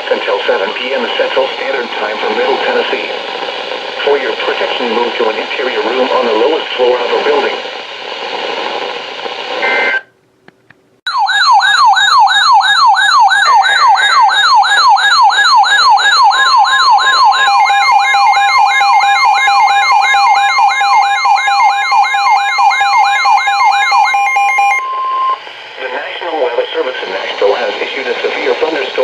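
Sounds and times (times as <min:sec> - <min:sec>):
radio hiss with short tones: 0:00.0 - 0:10.1, 0:24.9 - 0:29.0
electronic siren wailing: 0:11.1 - 0:25.4.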